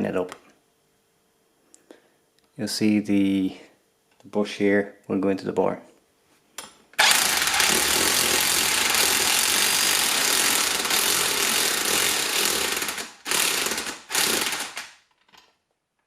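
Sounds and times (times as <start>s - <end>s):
impact wrench hammering: 7.0s - 14.9s.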